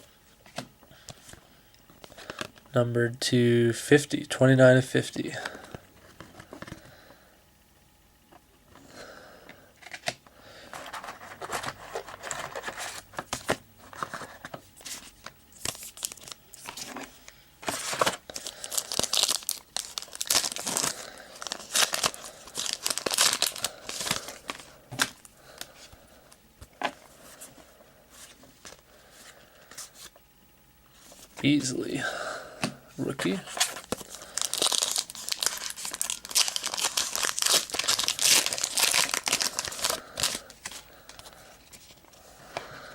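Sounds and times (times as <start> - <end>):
packaging crinkling and tearing: 15.6 - 25.7, 33.2 - 42.0.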